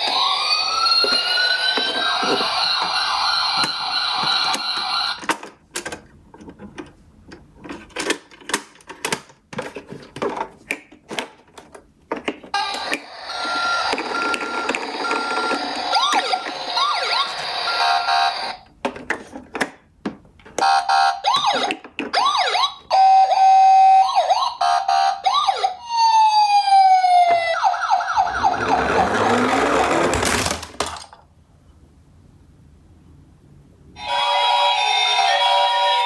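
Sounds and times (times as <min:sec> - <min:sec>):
toy ambulance siren: 0:00.0 - 0:05.2, 0:12.5 - 0:18.6, 0:20.6 - 0:30.4, 0:34.0 - 0:36.0.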